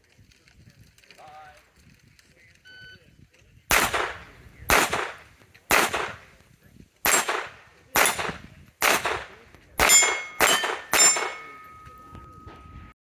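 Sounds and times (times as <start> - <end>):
pistol shots: 3.7 - 6.4, 7.0 - 11.9
steel plate ringing: 9.8 - 12.9.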